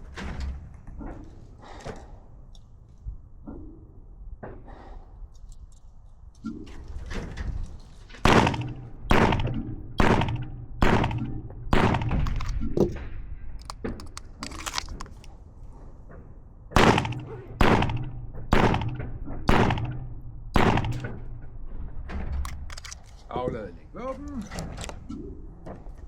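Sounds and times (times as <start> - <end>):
pistol shots: 8.2 - 12.6, 16.7 - 21.3.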